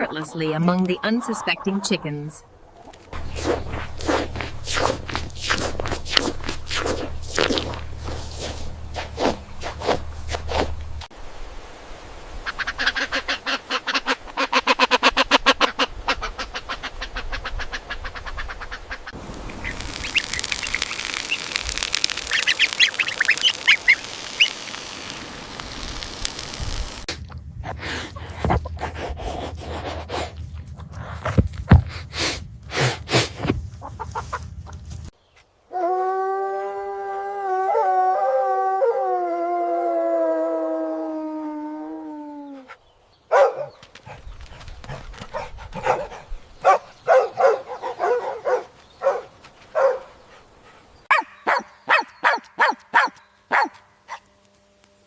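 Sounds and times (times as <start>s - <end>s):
ducks quacking: 0.0s - 2.4s, 12.4s - 21.6s
high-pitched bird calls: 19.5s - 24.8s
dog howling: 35.7s - 42.6s.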